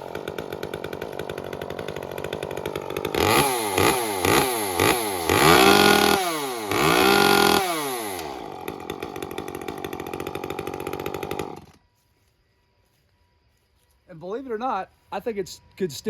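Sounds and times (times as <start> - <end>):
chainsaw engine revving: 0.0 - 11.8
chainsaw idling: 0.0 - 11.8.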